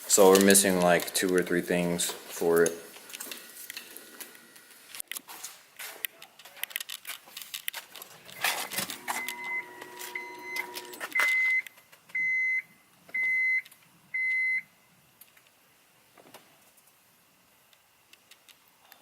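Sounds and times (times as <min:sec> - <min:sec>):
car warning chime beeping: 0:09.0 - 0:11.6.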